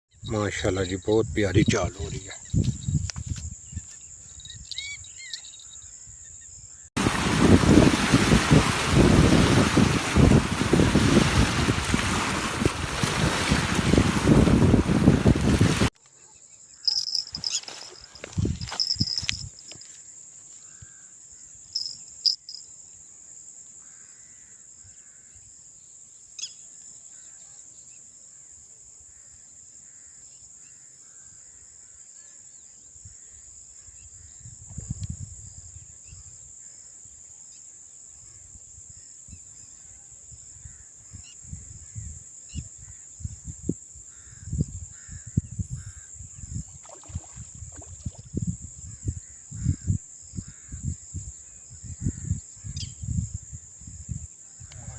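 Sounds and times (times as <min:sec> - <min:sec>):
insects droning: 0:00.1 - 0:07.4, 0:16.0 - 0:54.9
crows cawing faintly: 0:23.8 - 0:25.3.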